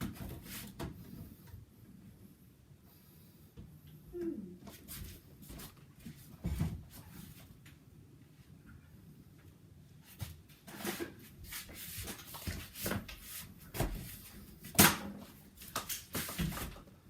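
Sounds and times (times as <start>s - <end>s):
shuffling: 10.0s - 14.7s.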